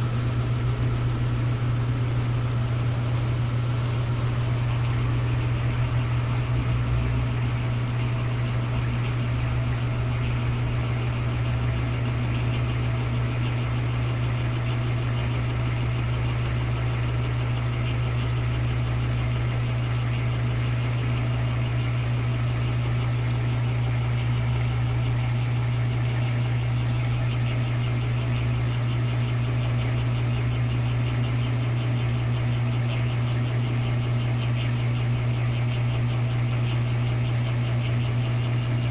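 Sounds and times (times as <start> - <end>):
washing machine motor hum: 0.0 - 38.9.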